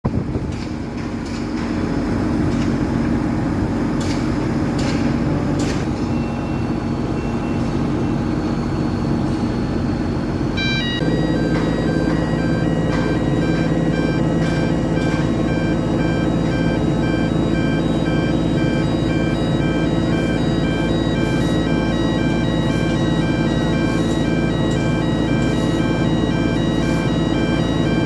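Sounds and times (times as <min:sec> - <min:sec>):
machinery engine running: 0:00.1 - 0:28.0
sharp metallic knocks: 0:04.0 - 0:06.0.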